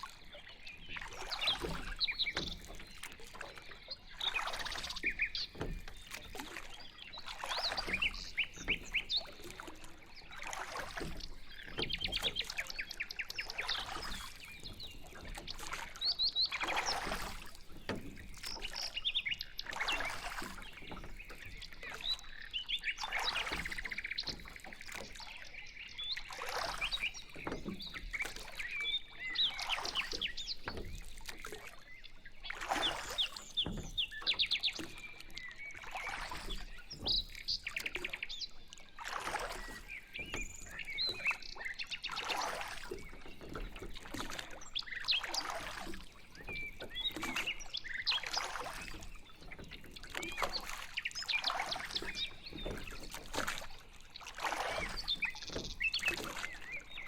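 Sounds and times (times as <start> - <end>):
songbirds chirping: 0.0 - 57.0
water swishing from pedal boat: 0.0 - 57.0.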